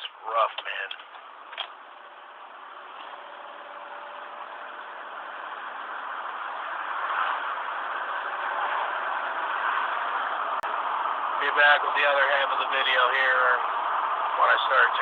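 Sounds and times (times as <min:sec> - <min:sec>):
car engine rough idle: 0:10.0 - 0:15.0.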